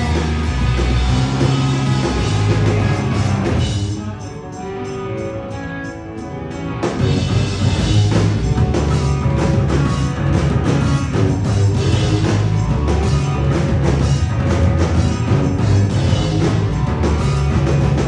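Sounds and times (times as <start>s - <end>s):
live rock band playing: 0.0s - 18.0s.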